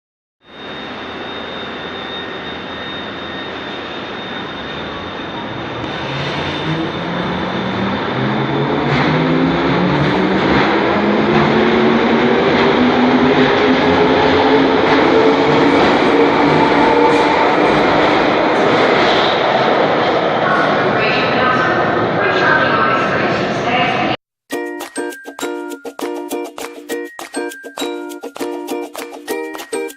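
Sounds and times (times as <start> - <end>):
train wheels rumbling on rails: 5.7 - 21.7.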